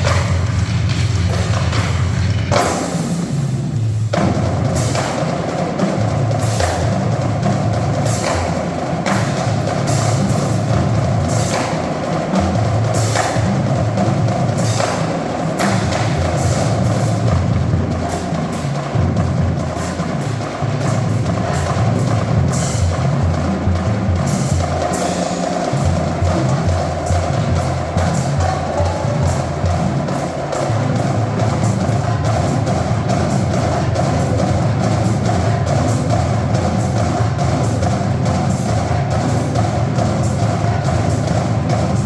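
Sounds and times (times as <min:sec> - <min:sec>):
deep bass drums: 0:00.0 - 0:04.8
marching drumline playing: 0:00.0 - 0:42.0.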